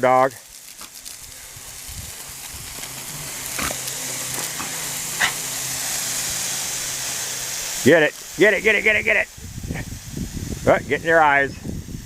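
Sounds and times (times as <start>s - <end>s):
garden hose spraying water: 0.0s - 12.0s
dog snapping at spray: 3.5s - 5.4s.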